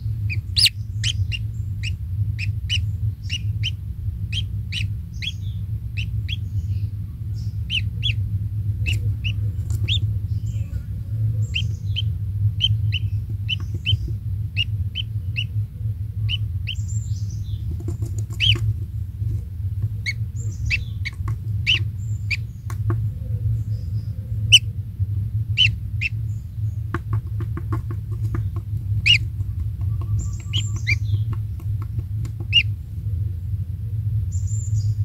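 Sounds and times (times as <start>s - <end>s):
kingfisher chirping: 0.0s - 10.8s, 11.4s - 15.6s, 16.2s - 18.7s, 19.9s - 22.9s, 23.7s - 24.7s, 25.5s - 31.5s, 32.4s - 32.7s
steady low hum: 0.0s - 35.0s.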